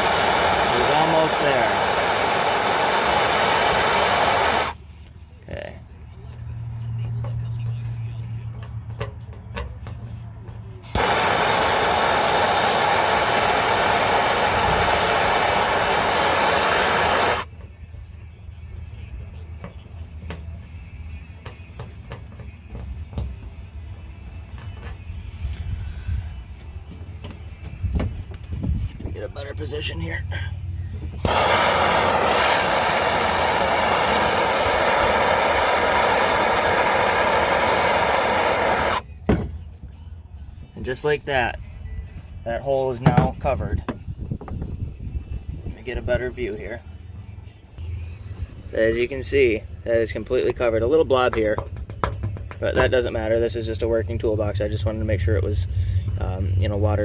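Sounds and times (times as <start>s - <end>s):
gas torch flame hissing: 0.0s - 4.8s, 10.8s - 17.5s, 31.2s - 39.0s.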